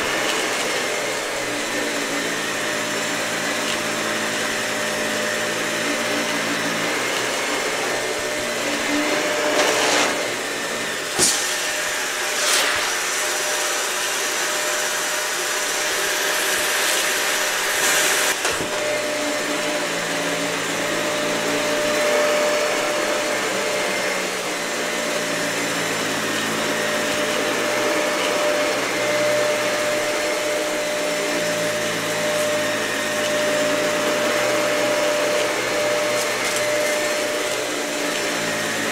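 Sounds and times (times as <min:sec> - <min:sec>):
vacuum cleaner whining: 0:00.0 - 0:38.9.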